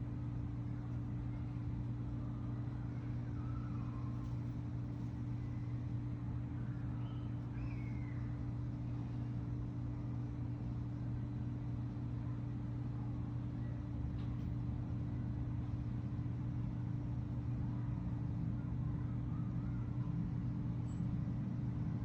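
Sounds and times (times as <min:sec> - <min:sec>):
constant low hum: 0:00.0 - 0:22.0.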